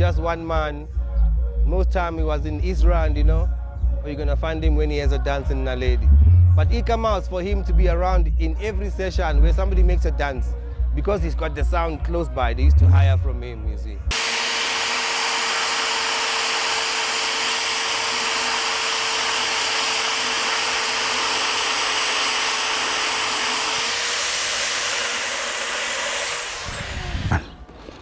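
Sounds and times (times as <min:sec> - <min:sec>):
electric motor rushing hum: 0:14.1 - 0:28.0.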